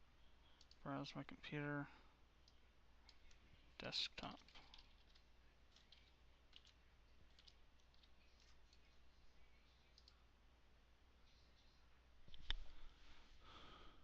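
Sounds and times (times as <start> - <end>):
low steady hum: 0.0 - 14.0
faint computer mouse clicks: 0.5 - 0.8, 9.9 - 10.2.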